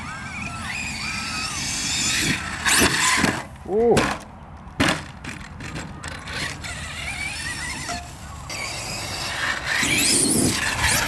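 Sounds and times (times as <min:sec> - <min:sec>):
tyre noise: 0:00.0 - 0:11.0.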